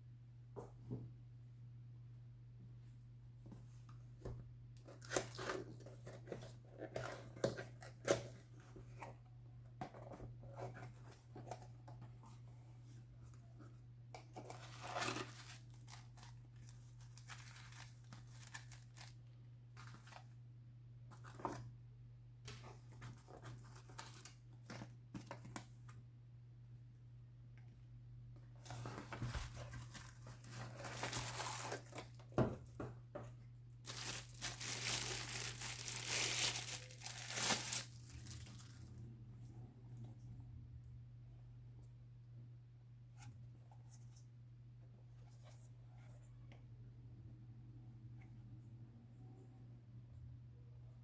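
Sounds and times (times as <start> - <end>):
plastic bag crinkling and rustling: 14.4 - 20.3, 28.6 - 32.4, 33.8 - 39.0.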